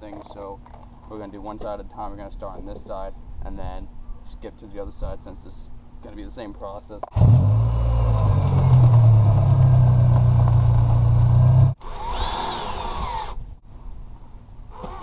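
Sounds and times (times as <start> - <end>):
power drill running: 11.8 - 13.4.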